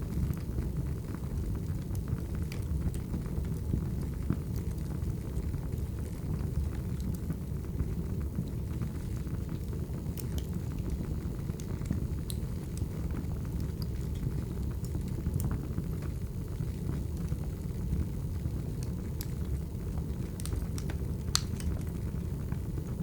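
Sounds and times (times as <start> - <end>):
firewood crackling: 1.5 - 23.0
sharp pops and snaps: 20.2 - 22.0.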